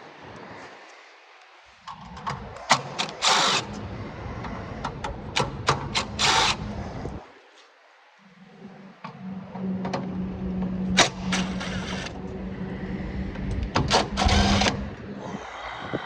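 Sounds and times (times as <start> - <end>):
small motor humming: 14.1 - 15.0.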